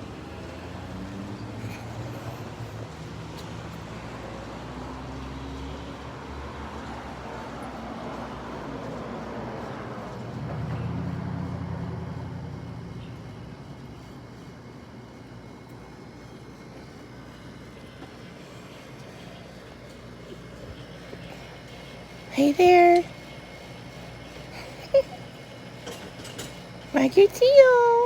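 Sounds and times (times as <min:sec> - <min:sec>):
passing tyre noise: 0:00.0 - 0:14.0
vehicle engine rumble: 0:00.0 - 0:27.3.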